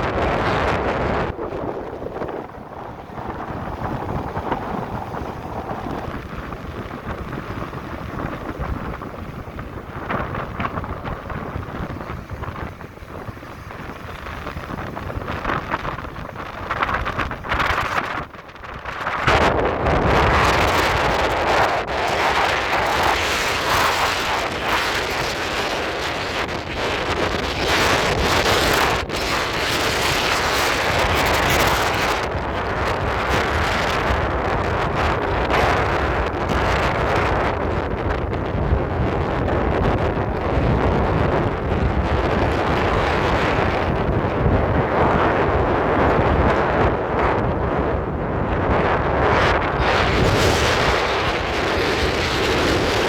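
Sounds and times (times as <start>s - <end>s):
storm surf breaking: 0.0s - 53.0s
wind buffeting microphone: 0.0s - 53.0s.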